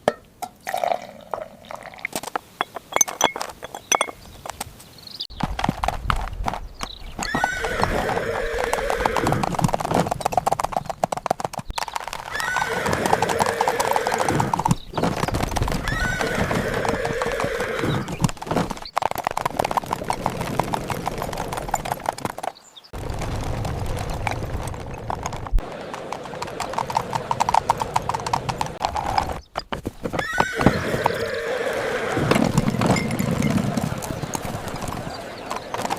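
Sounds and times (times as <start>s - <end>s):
horse hooves clip-clopping: 1.4s - 35.9s
horse whinnying: 7.2s - 9.6s, 12.2s - 14.8s, 15.7s - 18.4s, 30.1s - 35.9s.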